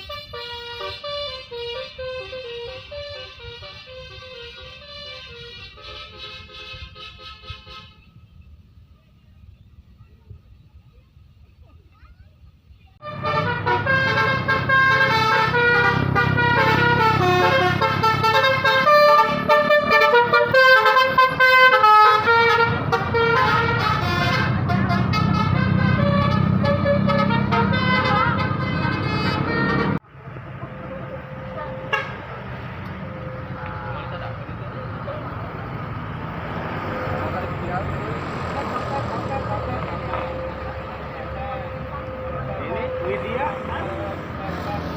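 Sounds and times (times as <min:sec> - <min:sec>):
musical air horn tune: 0:00.0 - 0:08.2, 0:13.0 - 0:30.0
traffic noise: 0:00.0 - 0:44.9.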